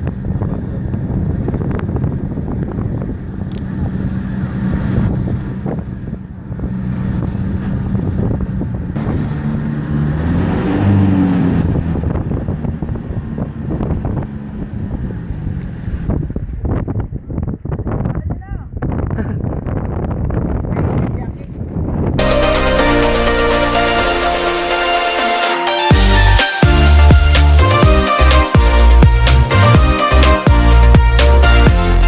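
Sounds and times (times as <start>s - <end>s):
motorboat engine running: 0.0s - 17.2s
wind buffeting microphone: 0.0s - 22.2s.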